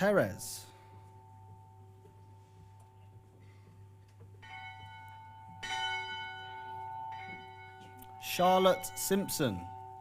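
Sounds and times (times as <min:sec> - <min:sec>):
hand bell ringing: 0:04.4 - 0:10.0.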